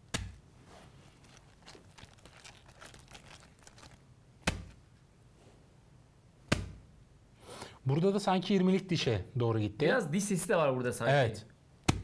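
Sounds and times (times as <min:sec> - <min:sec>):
crinkling of cabbage leaves: 0:00.6 - 0:04.8
cabbage struck with crunching thud: 0:04.4 - 0:04.8.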